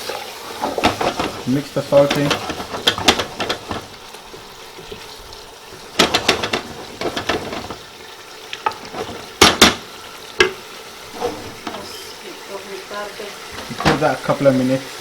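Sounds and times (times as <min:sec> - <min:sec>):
food sizzling in a pot: 0:00.0 - 0:15.0
spoon scraping and knocking pot: 0:00.6 - 0:05.0, 0:05.7 - 0:07.9, 0:08.6 - 0:12.2.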